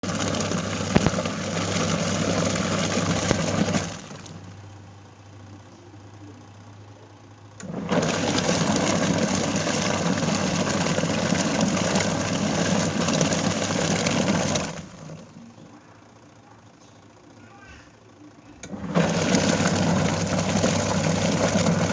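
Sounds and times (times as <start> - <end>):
washing machine rattling grind: 0.0 - 4.7, 7.6 - 15.8, 18.6 - 21.9.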